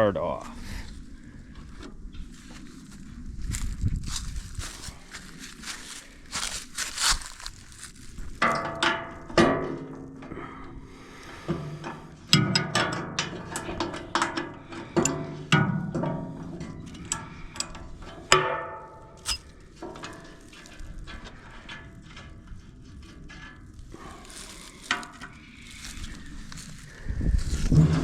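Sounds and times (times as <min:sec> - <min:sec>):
metal tools clinking and clanking: 0:16.5 - 0:22.4.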